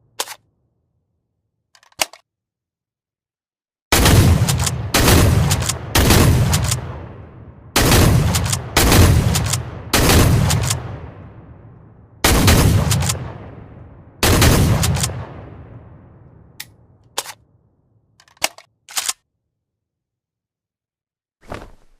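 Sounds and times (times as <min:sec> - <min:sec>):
shotgun shots echoing: 0:12.2 - 0:15.7.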